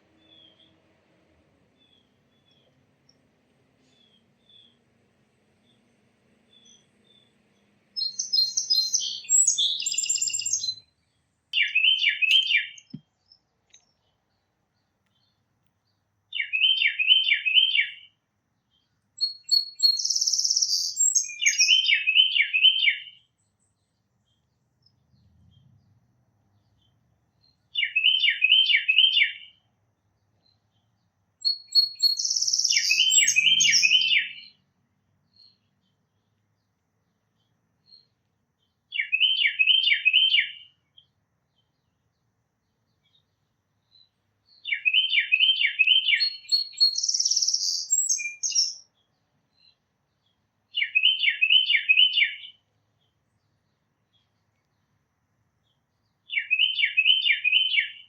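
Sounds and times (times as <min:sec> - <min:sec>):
songbird bursts of song: 0:00.0 - 0:58.0
titmouse whistled song: 0:08.0 - 0:10.8, 0:11.6 - 0:13.0, 0:19.2 - 0:23.0, 0:31.4 - 0:34.5, 0:44.6 - 0:48.8.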